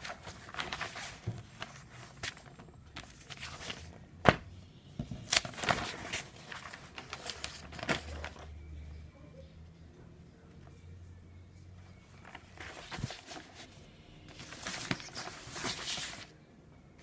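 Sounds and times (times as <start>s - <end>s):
newspaper pages rustling: 0.0s - 8.6s, 12.0s - 16.3s.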